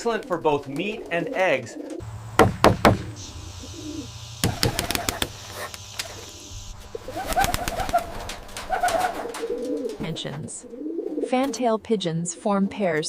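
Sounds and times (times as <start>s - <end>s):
pigeons cooing: 0.0s - 2.1s, 2.8s - 11.4s
steady low hum: 2.0s - 10.9s.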